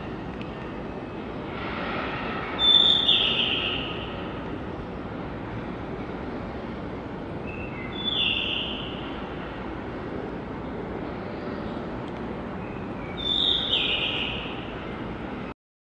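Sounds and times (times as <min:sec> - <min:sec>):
low background rumble: 0:00.0 - 0:15.5
bird singing warbled phrases: 0:02.6 - 0:04.1, 0:07.5 - 0:09.0, 0:12.6 - 0:14.7.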